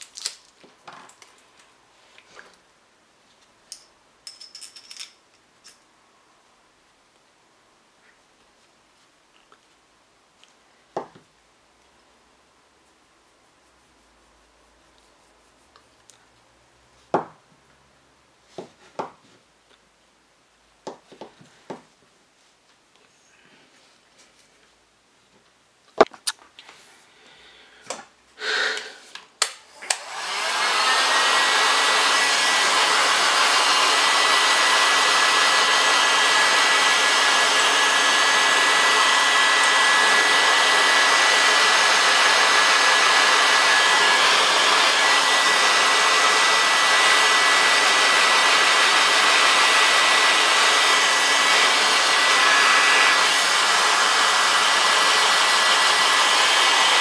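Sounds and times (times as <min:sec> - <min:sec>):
hot-air blower rushing and whining: 0:29.7 - 0:57.0.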